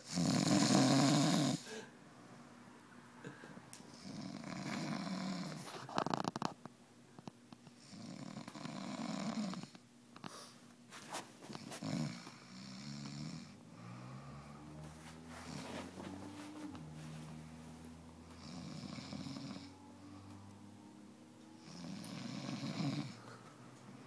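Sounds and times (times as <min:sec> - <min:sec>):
man snoring: 0:00.0 - 0:01.9, 0:03.9 - 0:06.4, 0:07.8 - 0:09.8, 0:11.8 - 0:15.6, 0:18.3 - 0:20.2, 0:21.6 - 0:23.2.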